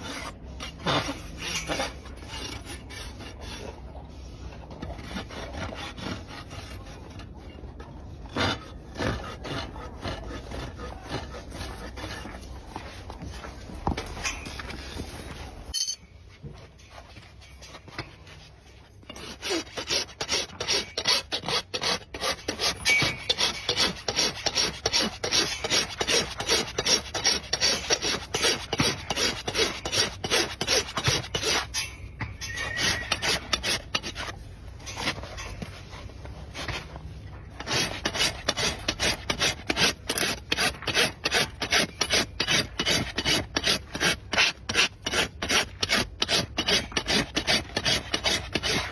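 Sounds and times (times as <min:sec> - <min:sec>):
rasp filing hoof: 0:00.0 - 0:15.6, 0:16.8 - 0:48.9.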